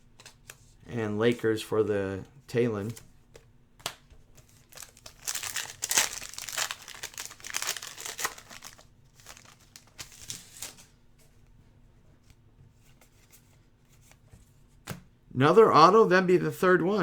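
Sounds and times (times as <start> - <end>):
plastic wrapper crinkling and tearing: 4.4 - 10.8.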